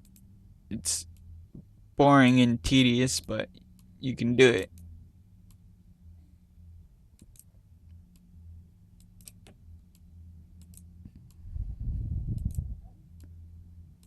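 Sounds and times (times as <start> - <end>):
low steady hum: 0.0 - 14.0
muffled low rumble: 0.0 - 14.0
computer mouse clicking: 7.2 - 7.5, 9.0 - 11.4, 12.3 - 12.6.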